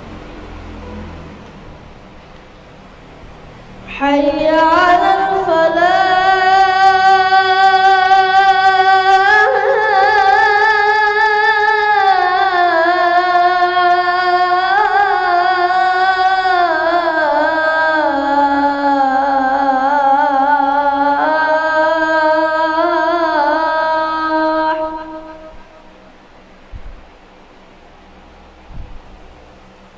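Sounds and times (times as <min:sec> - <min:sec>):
boy chanting call to prayer: 0:03.4 - 0:26.0.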